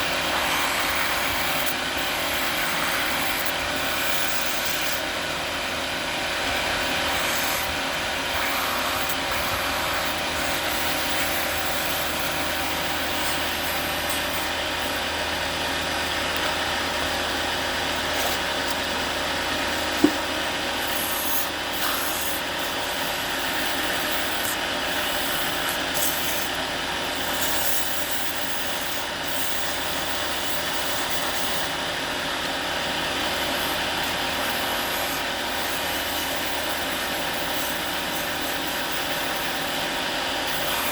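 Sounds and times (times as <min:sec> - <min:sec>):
turning tool scraping wood: 0:00.0 - 0:05.1, 0:06.5 - 0:14.6, 0:19.8 - 0:26.6, 0:33.2 - 0:40.9
wood lathe running: 0:00.0 - 0:40.9.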